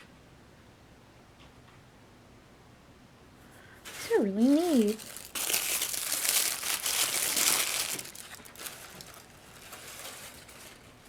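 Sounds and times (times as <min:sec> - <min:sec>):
packaging crinkling: 0:03.9 - 0:11.0.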